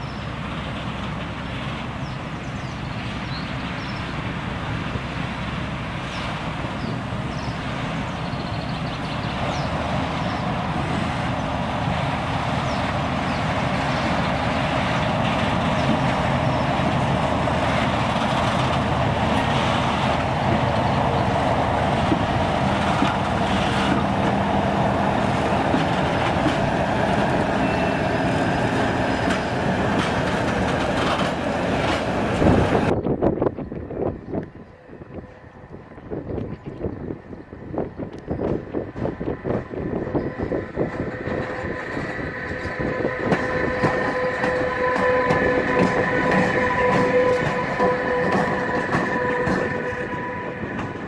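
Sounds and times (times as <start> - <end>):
train passing on rails: 0.0 - 51.0.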